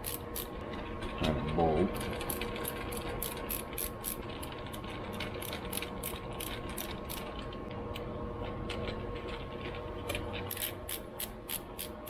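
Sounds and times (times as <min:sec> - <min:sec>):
ratchet wrench clicking: 0:00.0 - 0:00.6, 0:02.0 - 0:07.3, 0:10.5 - 0:12.0.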